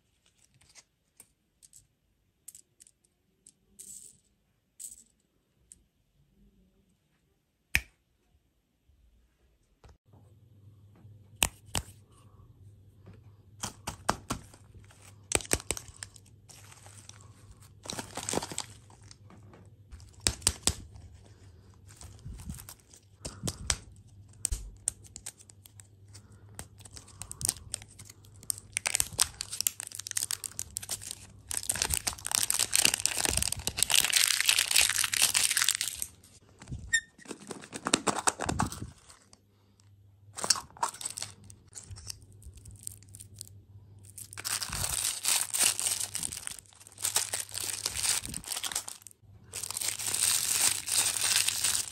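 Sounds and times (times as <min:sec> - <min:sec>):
plastic wrappers crinkling: 0:14.3 - 0:39.4, 0:40.4 - 0:51.9
wrappers being torn open: 0:14.4 - 0:19.2, 0:21.9 - 0:36.3, 0:40.4 - 0:51.9.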